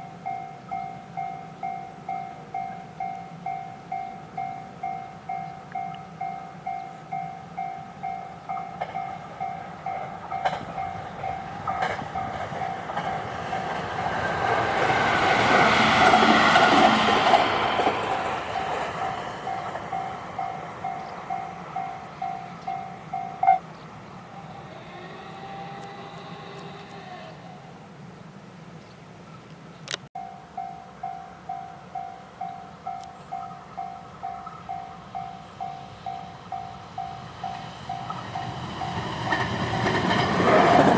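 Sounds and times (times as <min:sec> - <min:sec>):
level crossing warning bell: 0:00.0 - 0:13.4, 0:17.8 - 0:23.7, 0:30.2 - 0:40.2
train rumbling: 0:00.0 - 0:28.8, 0:29.9 - 0:40.9.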